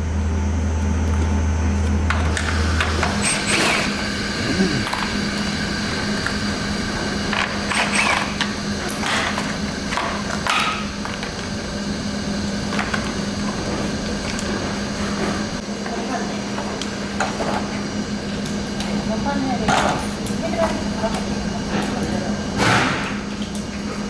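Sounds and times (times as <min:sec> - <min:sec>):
power tool winding down: 0:02.3 - 0:06.2
steady low hum: 0:03.9 - 0:07.4.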